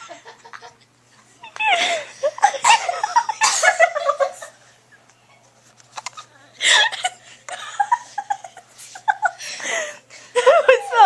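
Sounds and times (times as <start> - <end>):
giggling and laughter: 1.4 - 5.1, 6.6 - 11.0.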